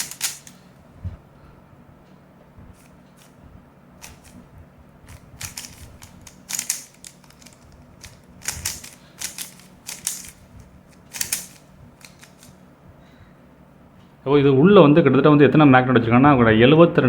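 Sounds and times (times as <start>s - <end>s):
puzzle cube clicking: 0.0s - 0.5s, 5.1s - 12.5s.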